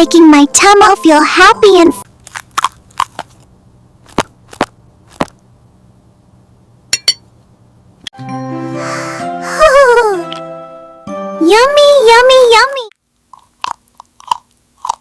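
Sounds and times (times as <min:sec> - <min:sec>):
children's music: 0:00.0 - 0:02.0, 0:08.2 - 0:12.9
ringing clink: 0:06.9 - 0:07.2.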